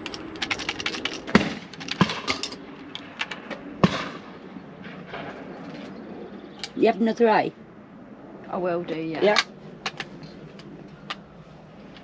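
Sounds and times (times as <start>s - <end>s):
loud sharp cracks: 0.9s - 2.6s, 3.8s - 4.3s.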